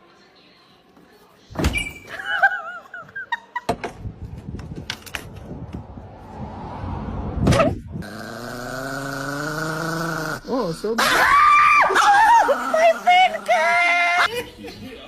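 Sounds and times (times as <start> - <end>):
dog growling low: 8.0 - 10.7.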